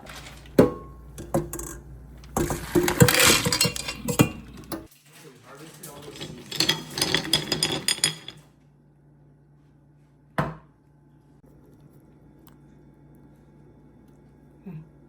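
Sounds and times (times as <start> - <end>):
shells and utensils clinking: 0.1 - 4.9, 5.6 - 8.4.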